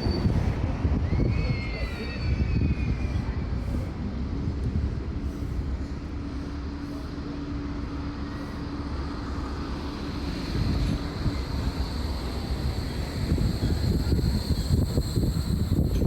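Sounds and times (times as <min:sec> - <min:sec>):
tram wheel squeal: 0:00.0 - 0:04.0, 0:08.2 - 0:16.0
tram low rumble: 0:00.0 - 0:16.0.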